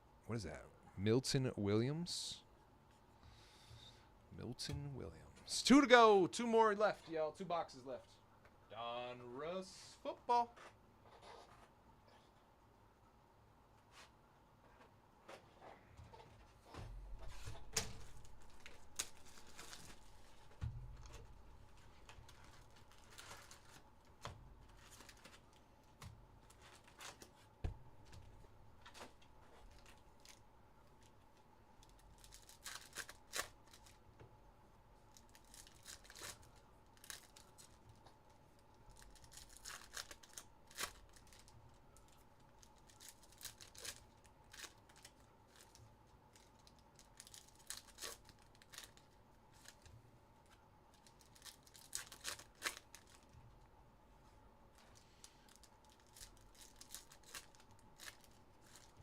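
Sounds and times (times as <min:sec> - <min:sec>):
wrapper ripping and crinkling: 0:18.0 - 0:21.2, 0:22.0 - 0:24.0, 0:31.8 - 0:34.0, 0:35.1 - 0:37.8, 0:38.9 - 0:53.4, 0:55.2 - 0:59.0.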